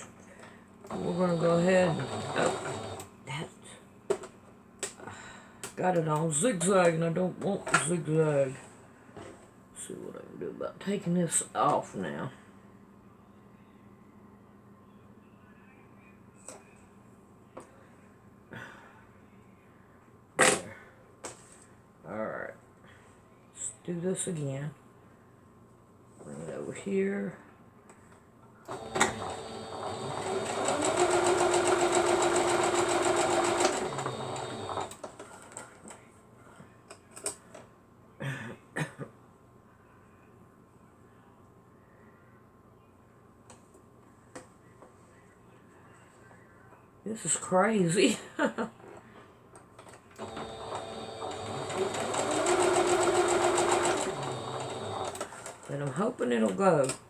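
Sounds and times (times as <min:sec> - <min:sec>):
sewing machine stitching: 0:00.9 - 0:03.1, 0:28.7 - 0:35.0, 0:50.2 - 0:55.7.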